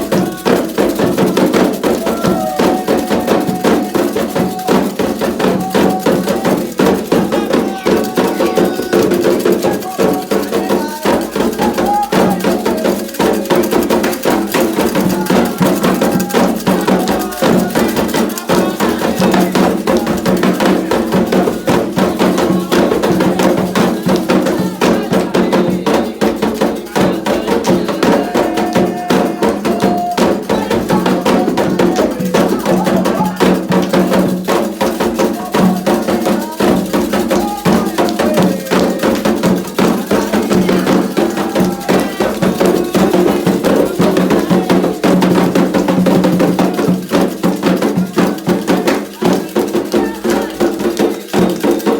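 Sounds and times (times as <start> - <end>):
fast hand drumming: 0.0 - 51.9
voices singing a chant: 0.0 - 51.9.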